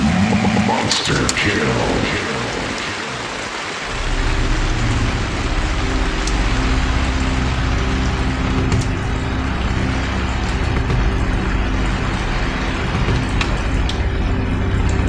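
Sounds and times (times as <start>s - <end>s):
steady rushing hiss: 0.0s - 15.0s
motor humming: 3.9s - 15.0s.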